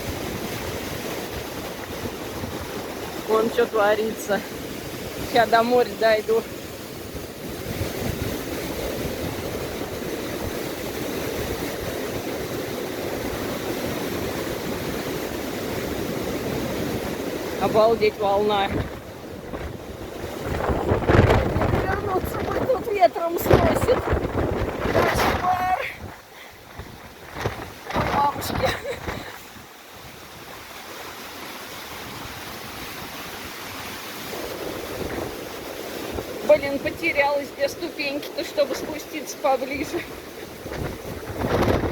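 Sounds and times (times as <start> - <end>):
heavy surf roaring: 0.0 - 41.9
storm wind buffeting microphone: 0.0 - 41.9.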